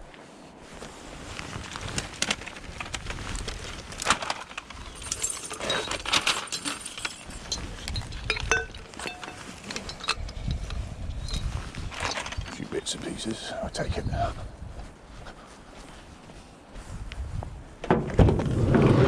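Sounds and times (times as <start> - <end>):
wind rumble on microphone: 0.0 - 4.1, 7.2 - 12.8, 13.6 - 19.0
scrap metal clinking: 4.0 - 12.7.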